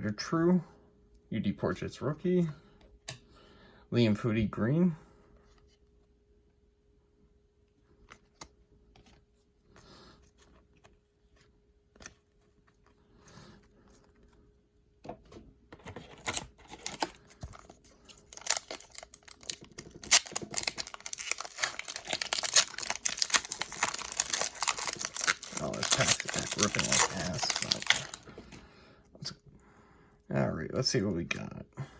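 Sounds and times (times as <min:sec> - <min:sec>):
cards clicking and rustling: 0:15.8 - 0:28.2
foil wrapper tearing: 0:16.2 - 0:28.2.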